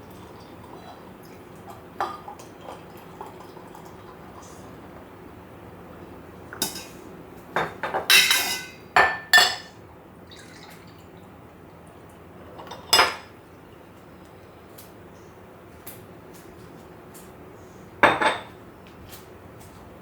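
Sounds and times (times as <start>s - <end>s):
dishes and utensils clinking: 6.6s - 7.0s, 7.6s - 9.8s.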